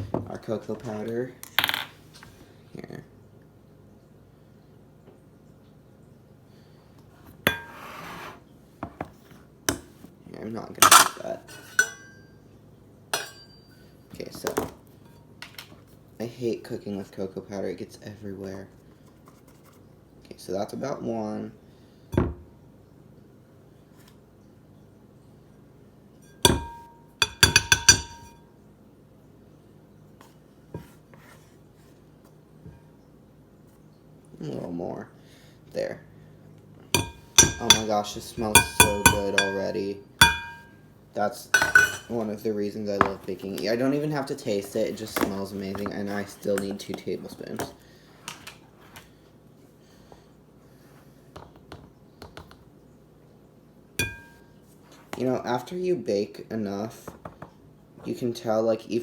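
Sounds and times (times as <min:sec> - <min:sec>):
measuring cup clinking on bowl: 0:13.2 - 0:13.8, 0:26.2 - 0:28.4, 0:37.0 - 0:40.8, 0:41.6 - 0:42.1, 0:54.0 - 0:54.5.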